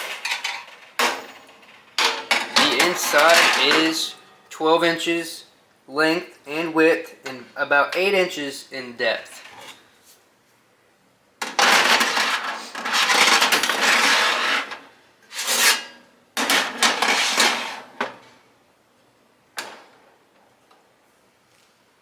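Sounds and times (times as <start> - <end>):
metal oven trays scraping: 0.0 - 4.4, 11.5 - 18.0.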